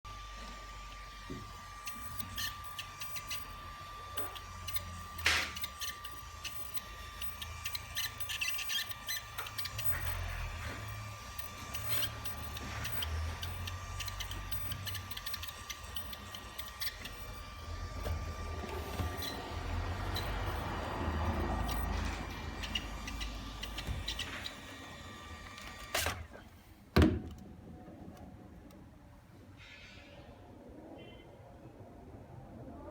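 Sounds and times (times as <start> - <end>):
drone clicking: 1.8 - 26.2.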